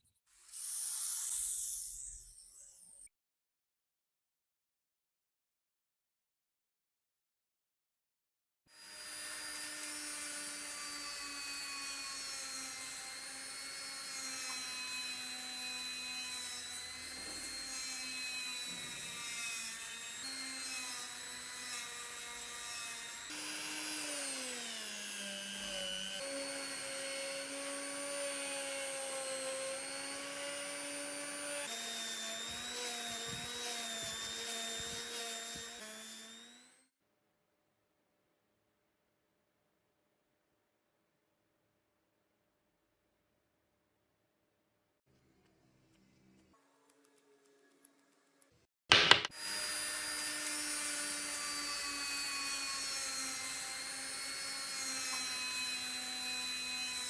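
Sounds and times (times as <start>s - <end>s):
power tool motor whining: 8.8s - 36.9s.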